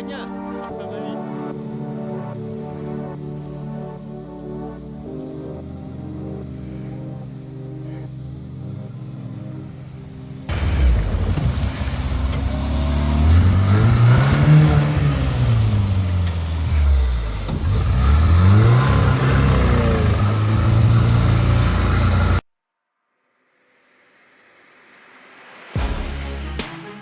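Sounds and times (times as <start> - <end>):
vehicle engine revving: 10.4 - 22.4.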